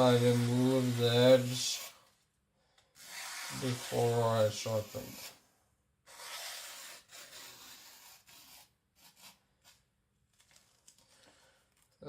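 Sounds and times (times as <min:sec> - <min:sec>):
cleaver cutting through paper: 0:03.0 - 0:05.4, 0:06.1 - 0:09.4.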